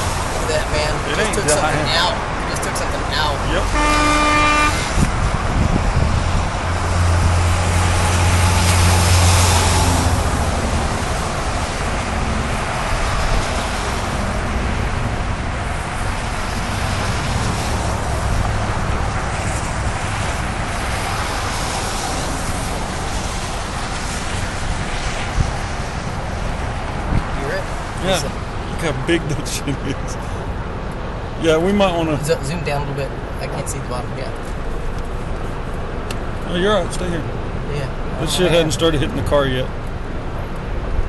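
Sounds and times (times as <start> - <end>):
strong storm wind: 0.0 - 31.8
road traffic: 0.0 - 41.0
vehicle engine drone: 0.0 - 41.0.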